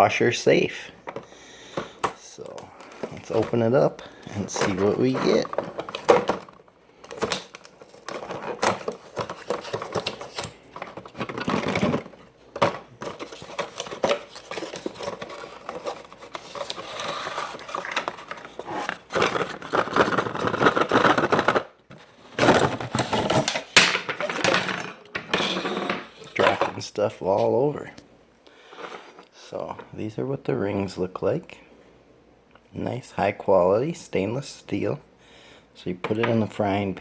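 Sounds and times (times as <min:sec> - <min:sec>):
packaging rustling: 0:01.1 - 0:23.8.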